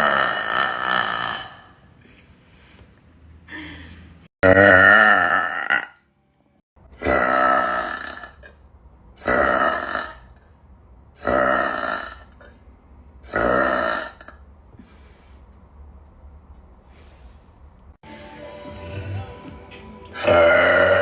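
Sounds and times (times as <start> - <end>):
woman burping loudly: 0.0 - 1.7, 4.4 - 6.0, 7.0 - 8.4, 11.2 - 12.2, 13.3 - 14.4, 20.2 - 21.0.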